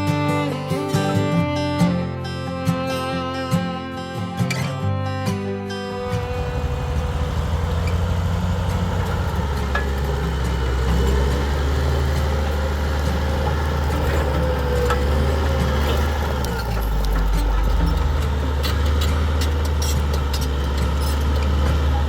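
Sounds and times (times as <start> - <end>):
bulldozer diesel engine droning: 0.0 - 22.0
faint clanks: 6.0 - 22.0.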